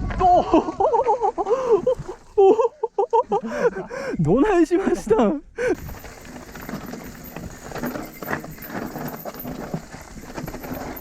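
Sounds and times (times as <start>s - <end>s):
mountain bike knocking and rattling: 5.8s - 11.0s.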